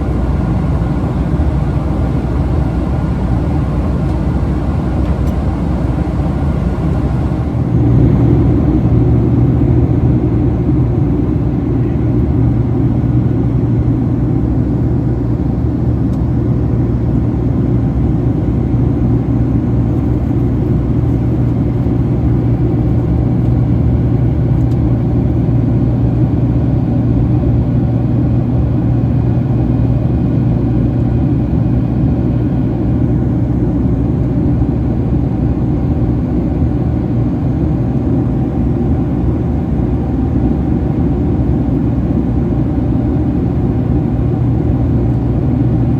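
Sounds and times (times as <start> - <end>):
airplane cabin engine drone: 0.0 - 45.9.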